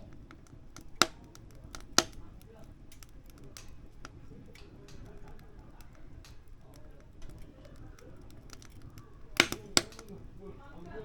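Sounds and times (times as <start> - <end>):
firewood crackling and snapping: 0.0 - 11.0
low rumble of fire: 0.0 - 11.0.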